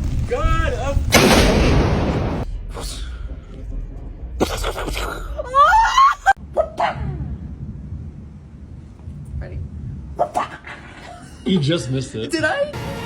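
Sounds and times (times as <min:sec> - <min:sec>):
sharp thunderclap: 0:00.0 - 0:02.8.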